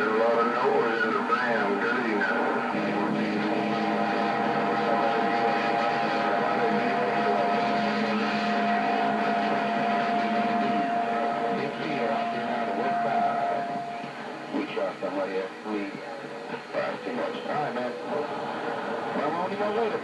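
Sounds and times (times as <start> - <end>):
garbled radio transmissions: 0.0 - 20.0
radio static: 0.0 - 20.0
low hum: 2.3 - 19.2
heterodyne whistle: 2.8 - 14.2.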